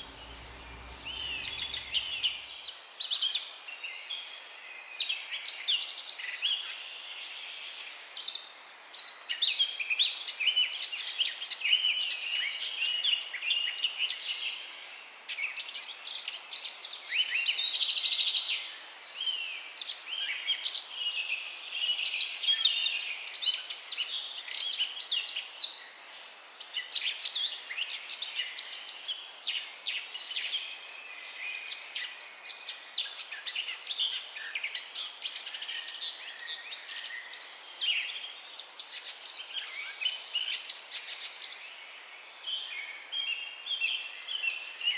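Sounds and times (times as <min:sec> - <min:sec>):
songbirds chirping and trilling: 0:00.0 - 0:02.9.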